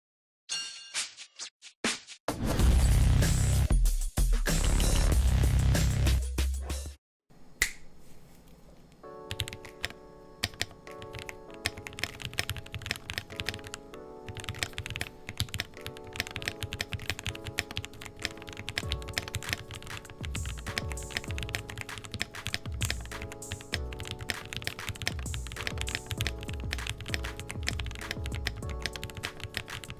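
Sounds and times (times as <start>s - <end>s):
background music: 2.3s - 7.0s, 9.0s - 29.9s
keyboard typing: 9.2s - 29.9s.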